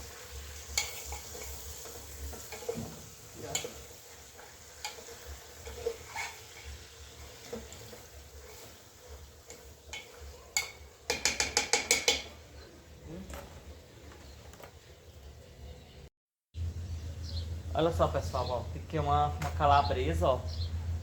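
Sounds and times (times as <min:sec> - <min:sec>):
spoon stirring food in pot: 0:00.2 - 0:12.7
spoon clinking against pot: 0:00.7 - 0:02.8, 0:03.5 - 0:03.9, 0:09.4 - 0:12.4
rapid taps on pot rim: 0:09.5 - 0:12.3.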